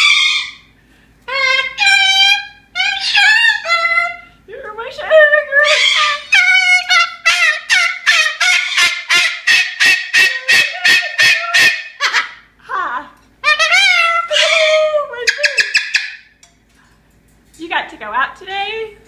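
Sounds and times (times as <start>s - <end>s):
cockatoo calling: 0.0s - 4.3s, 5.4s - 12.5s, 13.4s - 16.4s.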